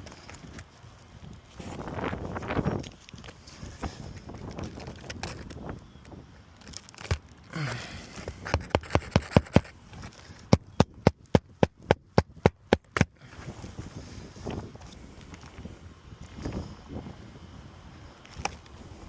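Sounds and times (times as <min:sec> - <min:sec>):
hammer driving nails: 0:08.4 - 0:09.7.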